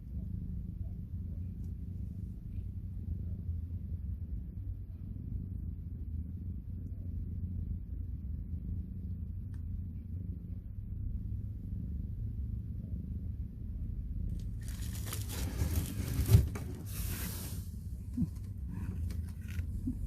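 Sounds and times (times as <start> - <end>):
cat purring: 0.0 - 20.0.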